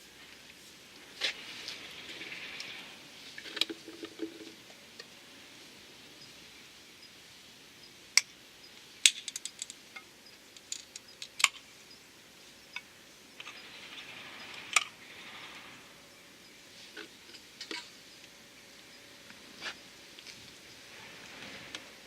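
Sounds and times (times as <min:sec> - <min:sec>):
soft rustle: 0:00.0 - 0:04.7
metal parts clicking and clinking: 0:09.0 - 0:11.6.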